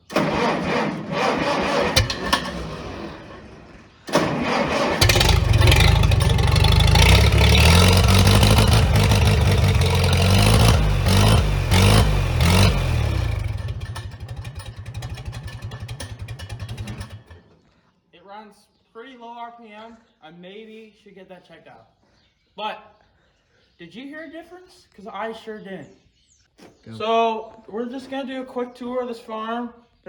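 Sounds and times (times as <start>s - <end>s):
tractor engine cranking and revving: 0.0s - 17.8s.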